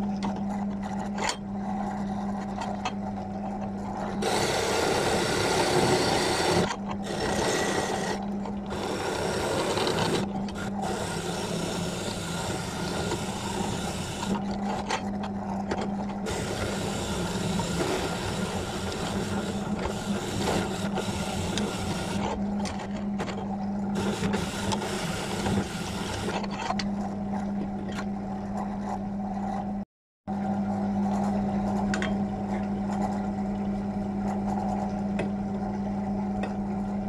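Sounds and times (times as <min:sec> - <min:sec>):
power tool motor humming: 0:04.2 - 0:14.4, 0:16.3 - 0:22.3.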